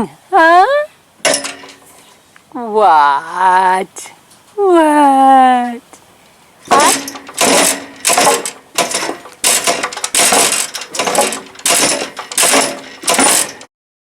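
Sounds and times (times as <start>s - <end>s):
horse banging metal stall: 1.2s - 1.8s, 6.7s - 13.7s.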